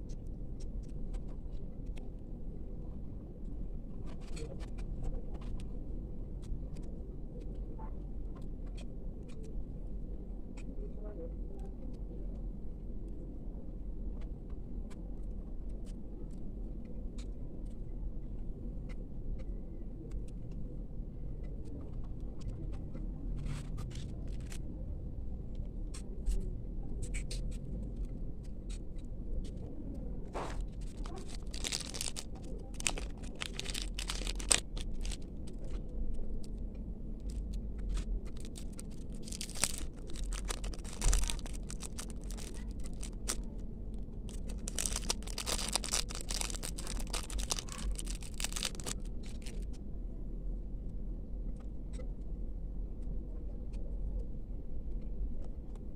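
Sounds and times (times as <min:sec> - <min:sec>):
steady low hum: 0:00.0 - 0:55.9
wrapping crinkling and tearing: 0:30.6 - 0:35.7, 0:37.2 - 0:43.6, 0:44.2 - 0:49.6.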